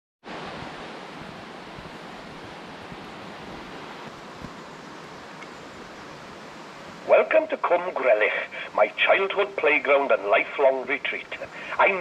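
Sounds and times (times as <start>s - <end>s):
rushing water roar: 0.2s - 12.0s.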